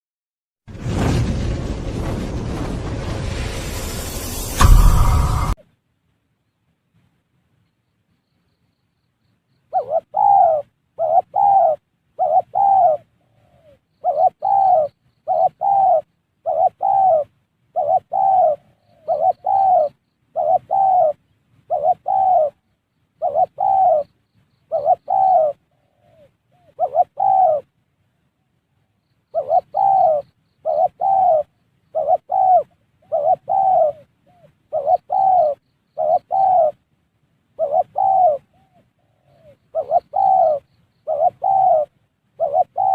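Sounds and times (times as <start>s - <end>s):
dove cooing: 9.7s - 22.6s, 23.2s - 24.1s, 24.7s - 27.7s, 29.3s - 36.8s, 37.6s - 42.9s.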